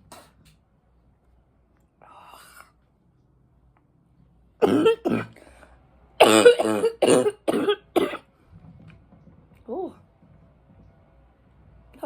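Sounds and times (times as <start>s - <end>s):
woman coughing deeply: 4.6s - 5.4s, 6.2s - 8.3s
woman talking: 9.6s - 10.0s.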